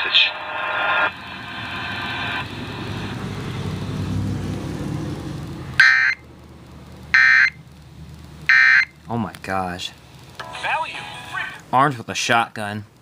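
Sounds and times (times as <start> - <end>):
low rumbling noise: 0.0 - 9.2
loud electronic squawk: 5.8 - 6.2, 8.5 - 8.9.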